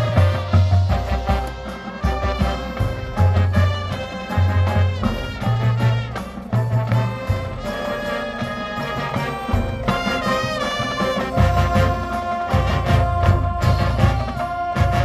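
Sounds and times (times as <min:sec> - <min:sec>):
marching band brass chords: 0:00.0 - 0:15.0.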